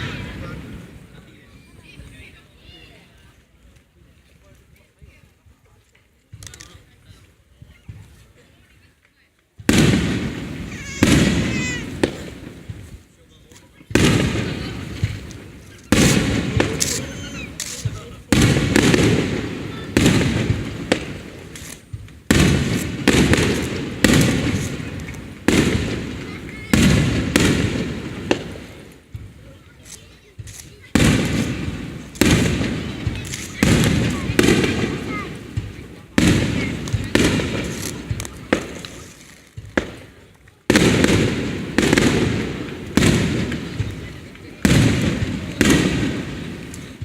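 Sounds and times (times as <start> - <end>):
fireworks booms with rumbling echo: 0.0 - 2.4, 9.6 - 47.0
sharp firework crack: 9.6 - 47.0.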